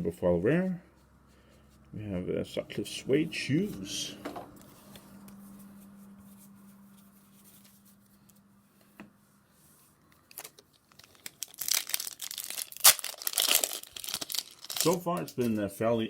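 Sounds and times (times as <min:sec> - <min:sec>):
foil wrapper crinkling and tearing: 0:10.3 - 0:15.4.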